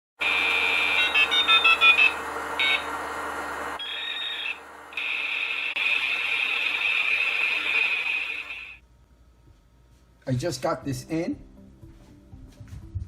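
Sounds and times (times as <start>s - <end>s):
steady high-pitched tone: 0.2s - 8.8s
short electronic beeps: 0.8s - 2.9s.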